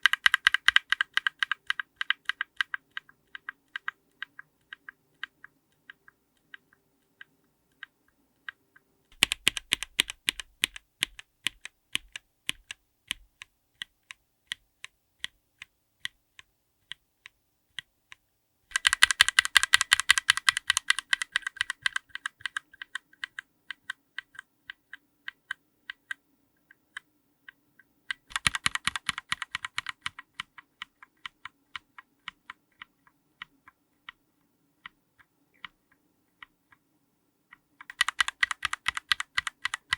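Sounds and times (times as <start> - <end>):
rapid typing on keyboard: 0.0 - 14.6, 18.7 - 26.2, 28.1 - 34.2, 37.6 - 39.9
single keyboard keystrokes: 0.0 - 26.2, 26.9 - 34.2, 37.8 - 39.9.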